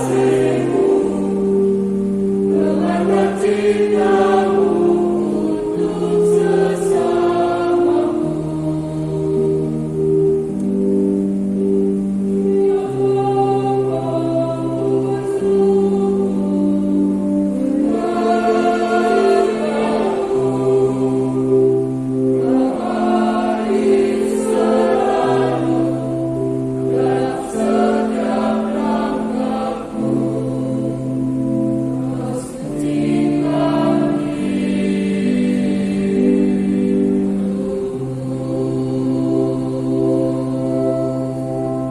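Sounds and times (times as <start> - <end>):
church choir singing hymn: 0.0 - 41.9.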